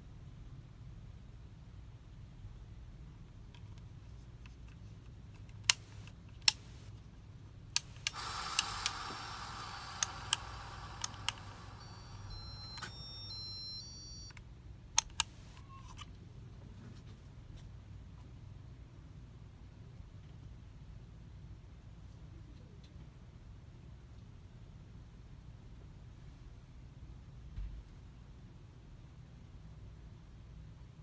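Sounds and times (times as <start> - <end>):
sharp clicks: 5.7 - 6.9, 7.8 - 13.4, 15.0 - 15.6
rough whirring: 7.8 - 12.9
low steady hum: 7.8 - 14.3.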